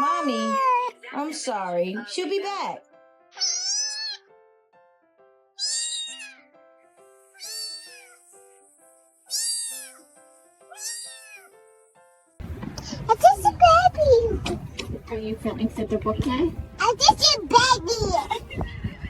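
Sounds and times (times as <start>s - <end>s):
cat meowing: 0.0s - 0.9s, 3.4s - 4.3s, 5.6s - 6.5s, 7.4s - 8.2s, 9.3s - 10.1s, 10.7s - 11.6s
soft background music: 0.0s - 19.0s.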